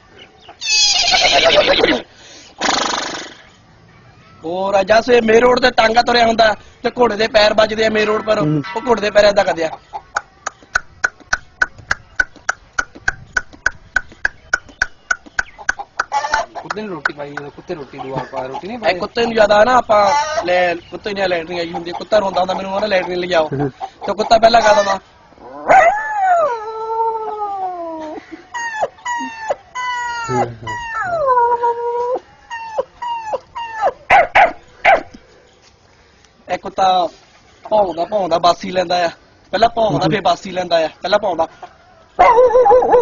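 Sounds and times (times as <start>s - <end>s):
mouth clicks imitating hooves: 10.0s - 18.7s
person imitating dog howling: 25.4s - 34.0s, 42.2s - 43.0s.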